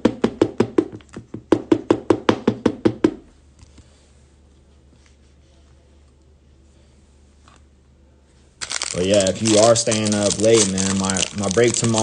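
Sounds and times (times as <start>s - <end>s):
fast hollow knocks: 0.0s - 3.2s.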